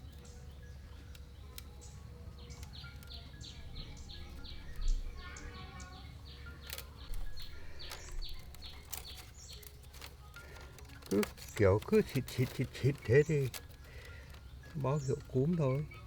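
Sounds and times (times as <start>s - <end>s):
bird chirping: 0.0s - 16.0s.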